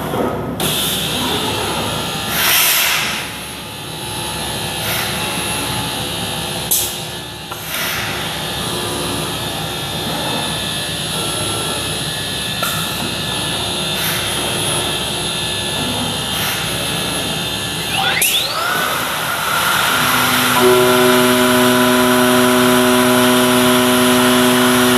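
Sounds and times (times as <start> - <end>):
spindle whine: 17.8 - 24.9
dust extraction noise: 17.9 - 24.9.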